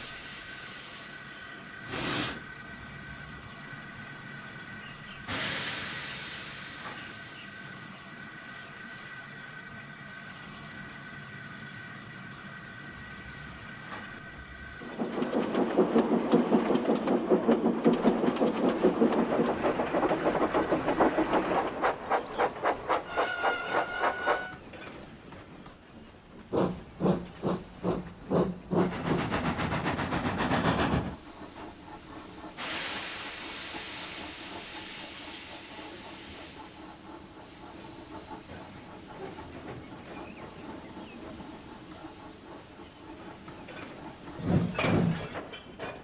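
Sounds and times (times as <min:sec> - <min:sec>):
steam hissing: 0:00.0 - 0:03.0, 0:04.9 - 0:08.6, 0:26.5 - 0:45.2
steam locomotive chuffing: 0:00.0 - 0:09.6, 0:12.9 - 0:24.6, 0:26.4 - 0:46.0.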